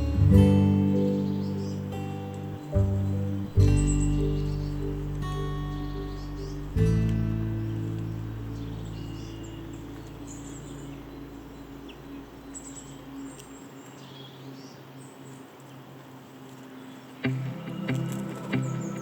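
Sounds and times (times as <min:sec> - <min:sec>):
acoustic guitar strumming: 0:00.0 - 0:12.4, 0:17.2 - 0:19.0
faint bird chirps: 0:00.9 - 0:15.4.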